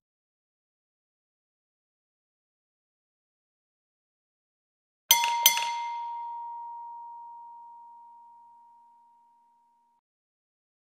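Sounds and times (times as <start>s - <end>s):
doorbell chime ringing: 5.1s - 9.8s.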